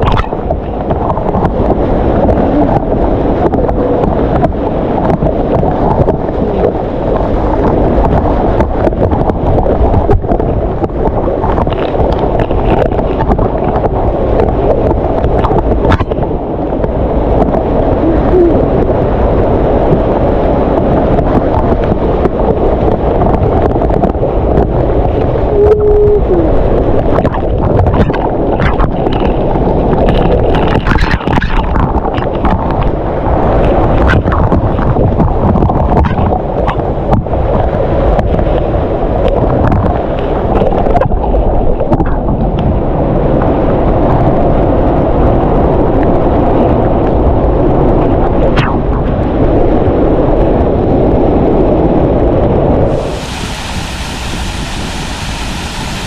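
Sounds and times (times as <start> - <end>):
waterfall rushing: 52.9 - 56.0.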